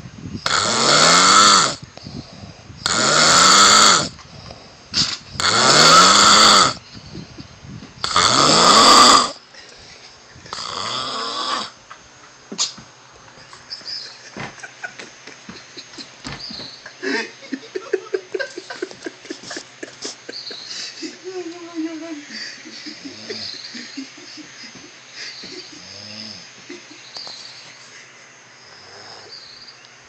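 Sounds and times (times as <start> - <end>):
person snoring loudly: 0.4 - 4.7, 5.4 - 6.8, 8.0 - 9.4, 10.5 - 11.8, 22.9 - 23.6, 25.8 - 26.5, 28.7 - 29.4.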